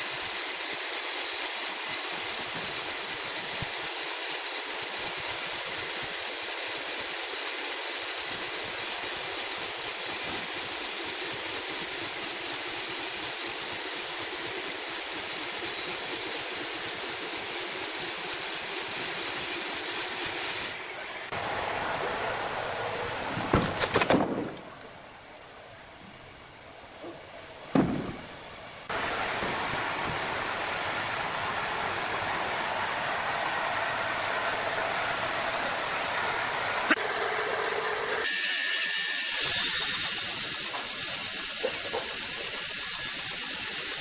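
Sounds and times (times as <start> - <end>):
machinery hissing: 0.0 - 23.6, 24.7 - 44.0.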